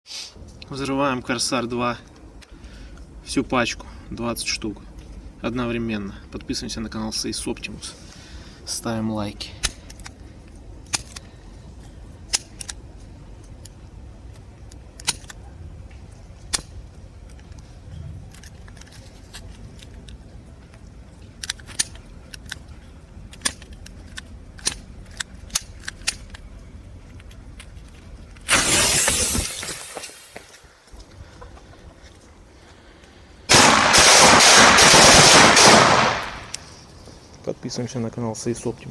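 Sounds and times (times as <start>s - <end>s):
firecrackers bursting: 28.5s - 30.5s, 33.5s - 36.9s
sharp clicks: 33.5s - 36.9s.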